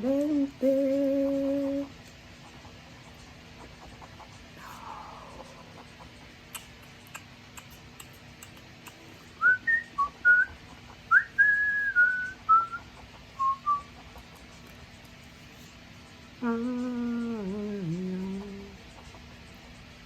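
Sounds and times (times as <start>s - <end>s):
person whistling a melody: 9.4s - 12.8s, 13.4s - 13.9s.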